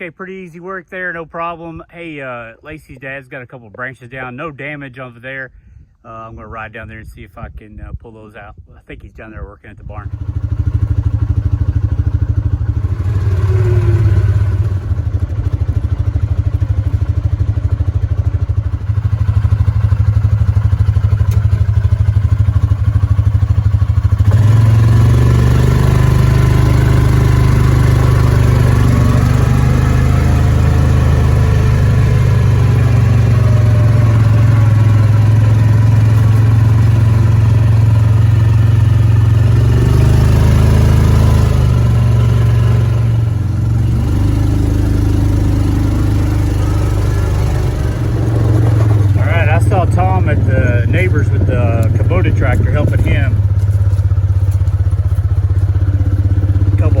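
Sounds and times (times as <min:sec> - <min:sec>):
small vehicle engine running: 0:10.1 - 0:57.0.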